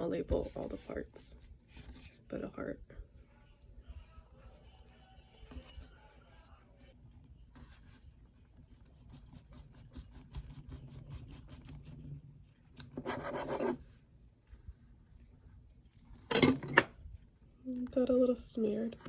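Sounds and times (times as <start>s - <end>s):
knife sawing through clay: 9.0s - 12.2s, 12.9s - 13.8s.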